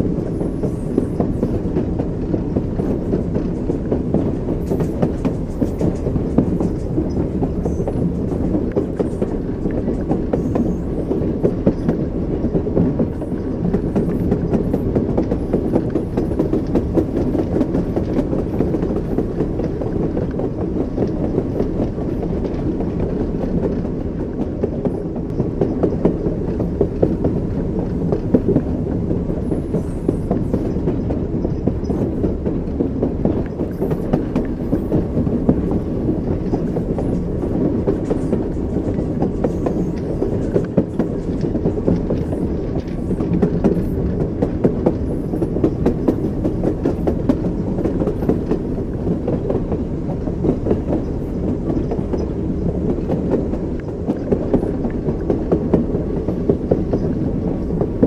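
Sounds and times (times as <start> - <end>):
moving train rumble: 0.0 - 58.0
train wheels clacking over rail joints: 0.0 - 58.0.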